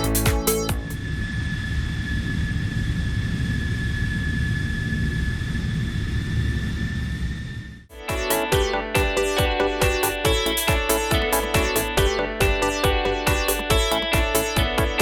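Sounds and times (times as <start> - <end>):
electronic dance music: 0.0 - 1.0, 7.9 - 15.0
jet engine rumble and whine: 0.7 - 7.9.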